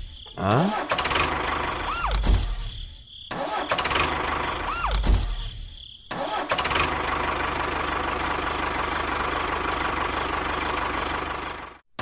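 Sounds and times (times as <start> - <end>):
engine chugging: 6.4 - 11.8.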